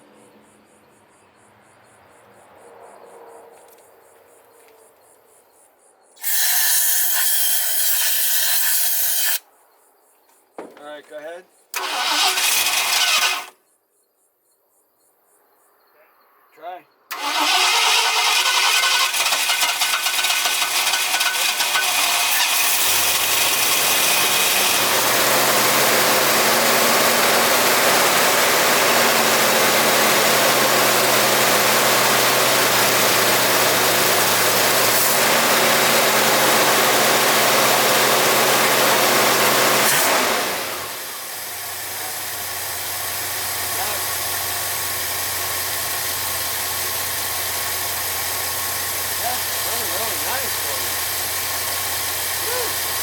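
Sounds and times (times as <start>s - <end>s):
truck engine running fast: 17.1s - 53.0s.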